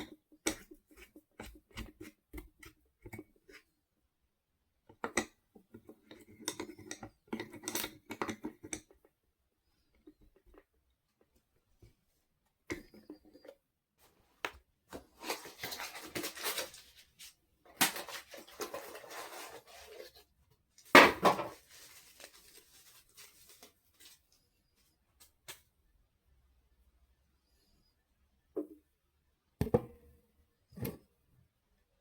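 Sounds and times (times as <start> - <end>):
scraping and rustling: 15.0 - 20.4, 21.2 - 24.4.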